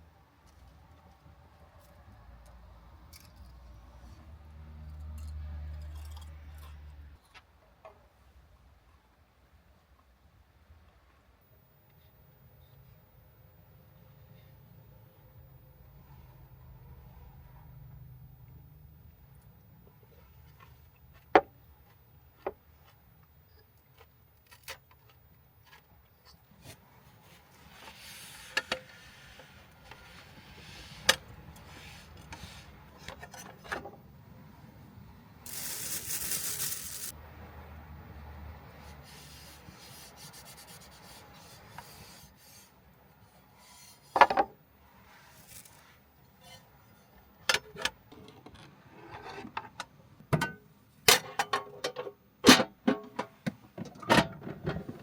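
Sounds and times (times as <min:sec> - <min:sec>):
small objects clicking and knocking: 0:35.5 - 0:37.1.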